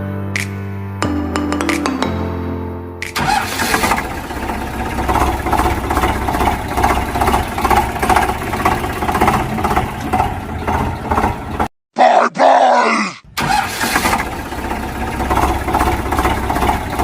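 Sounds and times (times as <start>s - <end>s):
engine running roughly: 3.2s - 11.7s, 13.4s - 17.0s.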